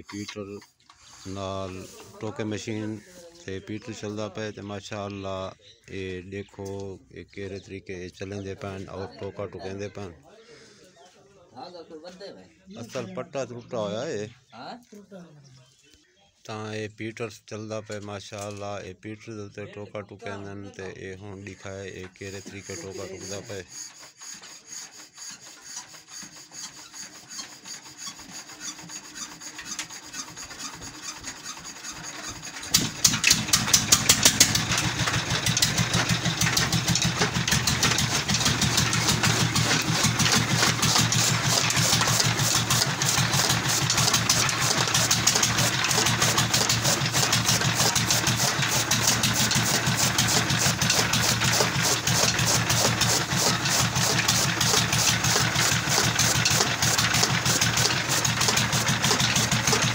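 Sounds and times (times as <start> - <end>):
rhythmic rubbing and scraping: 0.0 - 4.4, 21.8 - 59.9
diesel engine starting and running: 28.1 - 59.9.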